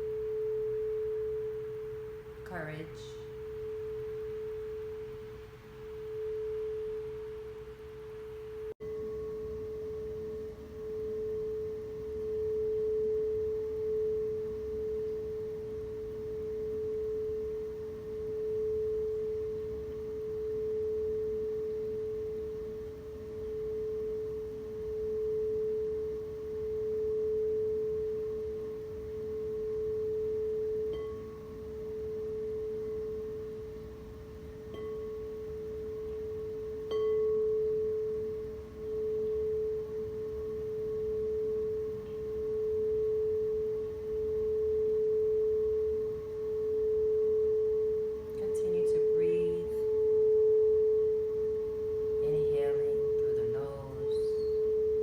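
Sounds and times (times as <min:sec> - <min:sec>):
singing bowl ringing: 0:00.0 - 0:55.0
singing bowl struck lightly: 0:34.7 - 0:38.6.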